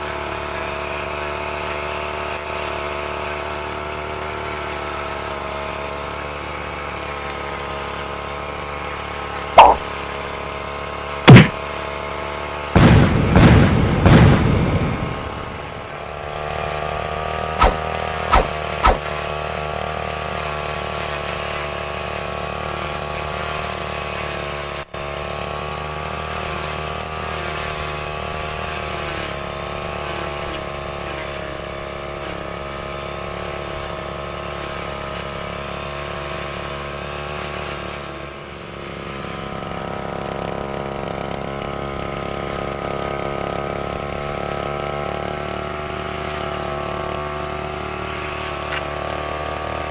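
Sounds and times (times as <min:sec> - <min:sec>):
brush cutter engine running: 0:00.0 - 0:49.9
sharp clicks: 0:09.6 - 0:09.8, 0:17.6 - 0:19.1.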